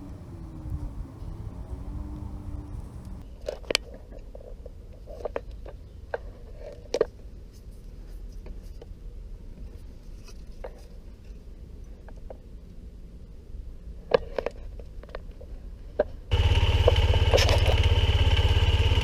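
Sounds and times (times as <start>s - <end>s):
low hum: 0.0s - 3.2s, 16.3s - 19.0s.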